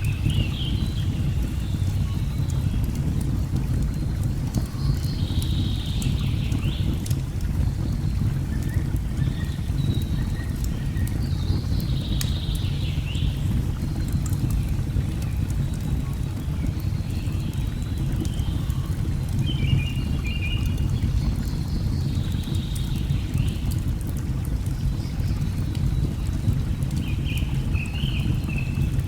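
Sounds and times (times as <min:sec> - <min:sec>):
log fire crackling: 0:00.0 - 0:29.0.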